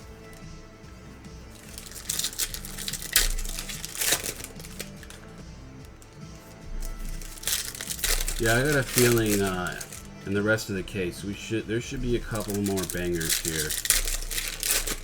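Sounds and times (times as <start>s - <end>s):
foil wrappers crinkling: 0.0s - 11.2s, 11.8s - 15.0s
background music: 0.0s - 15.0s.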